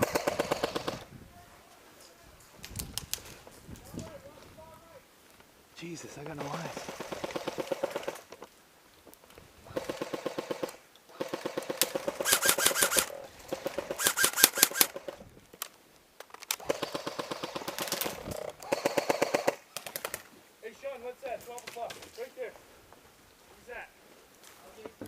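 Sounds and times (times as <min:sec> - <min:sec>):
airsoft guns firing bursts: 0:00.0 - 0:01.1, 0:06.3 - 0:08.3, 0:09.7 - 0:15.2, 0:16.6 - 0:20.2.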